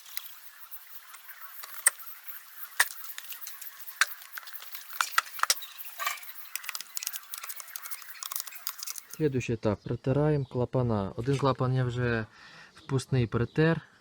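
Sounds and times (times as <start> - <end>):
metallic clicks of engine parts: 1.0 - 9.2
metal scrape: 2.7 - 9.2.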